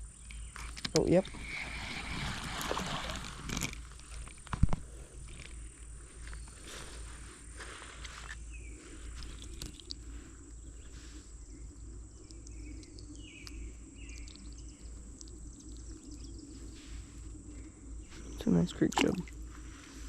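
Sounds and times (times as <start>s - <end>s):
bird chirps: 10.6s - 18.6s.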